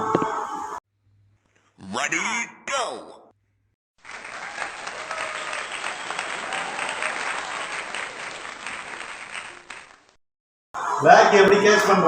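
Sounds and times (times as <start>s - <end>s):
crowd applauding: 4.0s - 10.2s.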